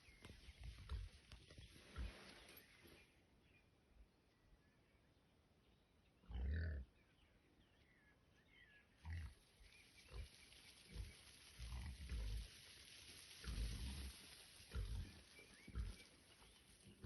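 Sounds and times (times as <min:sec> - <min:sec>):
wild boar grunting: 0:06.2 - 0:07.0.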